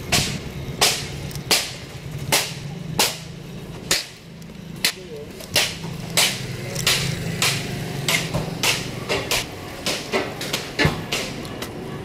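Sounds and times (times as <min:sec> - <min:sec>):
sharp knocks: 0:04.8 - 0:11.4.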